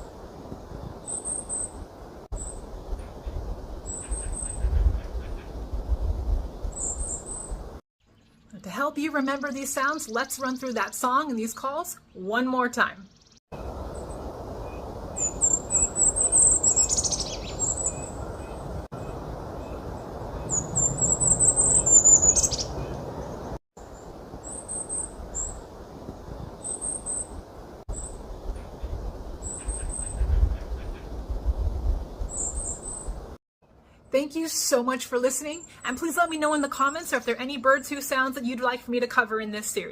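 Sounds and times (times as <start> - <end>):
kinglet raspy see calls: 14.7 - 18.6, 20.5 - 23.4.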